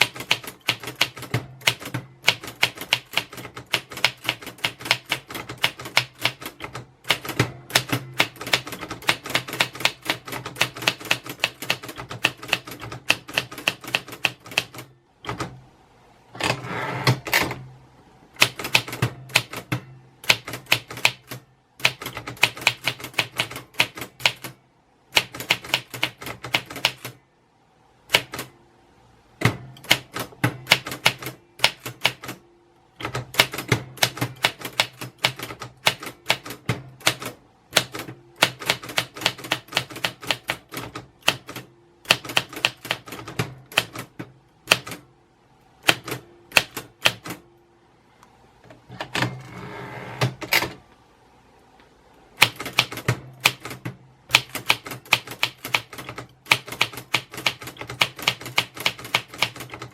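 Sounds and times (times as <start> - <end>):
typewriter keys clacking: 0.0 - 15.4, 52.4 - 59.9.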